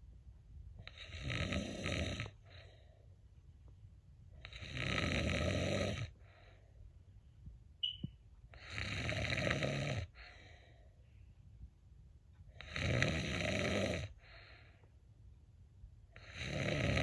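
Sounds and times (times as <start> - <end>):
cat snoring: 0.9 - 2.4, 4.4 - 6.1, 8.6 - 10.1, 12.6 - 14.1, 16.2 - 17.0
short high-pitched squeak: 7.8 - 8.1.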